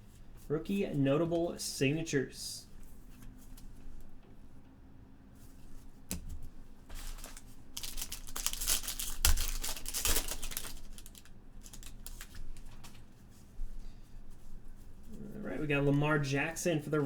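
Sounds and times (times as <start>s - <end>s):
plastic packaging crinkling: 6.9s - 13.0s.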